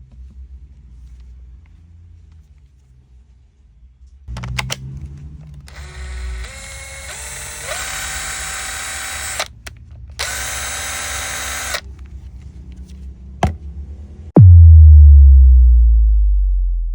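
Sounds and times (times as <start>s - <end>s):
click: 4.3s - 4.8s
impact driver motor whine: 5.7s - 9.6s, 10.2s - 11.8s
loud tone dropping in pitch: 14.4s - 16.9s.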